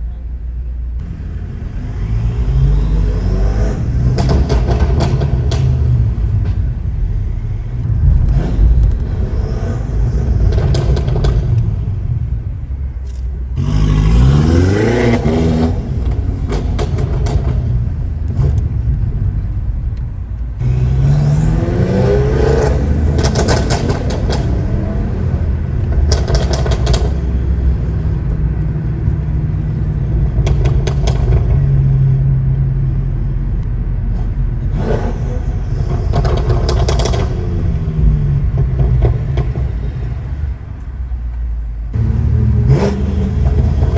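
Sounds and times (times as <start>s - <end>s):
car engine accelerating hard: 1.0s - 12.7s, 13.5s - 40.7s, 41.8s - 43.9s
exhaust crackles and pops: 4.2s - 14.2s, 15.1s - 20.6s, 23.0s - 28.4s, 30.2s - 31.9s.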